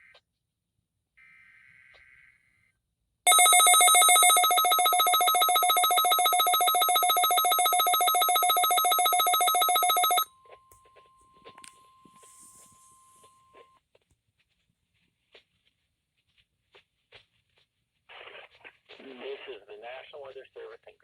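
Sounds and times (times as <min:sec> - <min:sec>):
shrill electronic alarm tone pulsing: 0:03.3 - 0:10.2
faint steady tone: 0:03.3 - 0:13.8.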